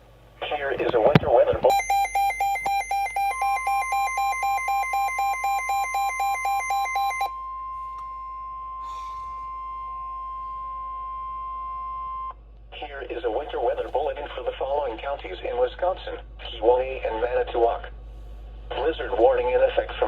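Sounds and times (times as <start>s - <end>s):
steady alarm tone: 1.7s - 12.2s
electronic alarm beeping: 1.7s - 12.3s.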